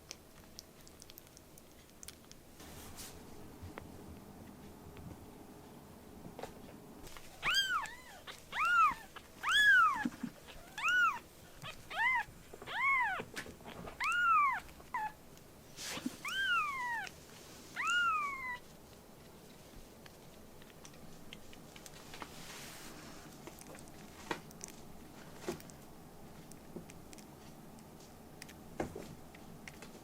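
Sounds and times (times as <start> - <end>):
kitten meowing: 7.4 - 13.3, 14.0 - 15.2, 16.2 - 17.1, 17.8 - 18.6.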